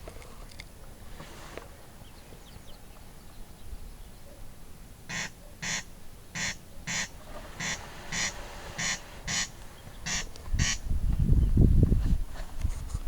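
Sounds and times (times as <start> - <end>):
corncrake rasping call: 5.1 - 10.9.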